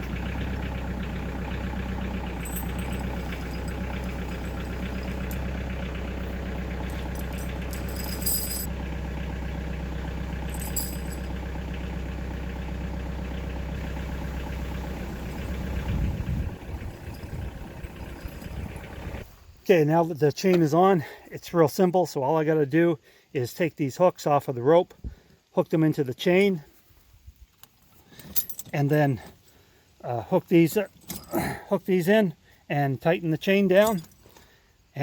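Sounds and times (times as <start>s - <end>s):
tractor diesel engine running: 0.0s - 19.6s, 28.1s - 35.0s
short metal clinks: 2.2s - 5.9s, 6.6s - 8.7s, 10.4s - 11.4s, 17.0s - 19.2s, 28.1s - 29.5s, 30.8s - 31.7s, 33.7s - 34.5s.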